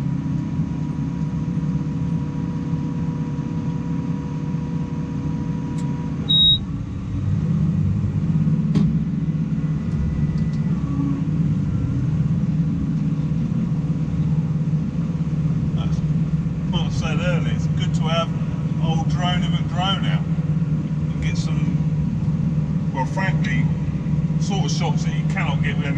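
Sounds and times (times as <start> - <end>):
tractor engine rumble: 5.0 - 25.9
high-pitched beep: 6.3 - 6.6.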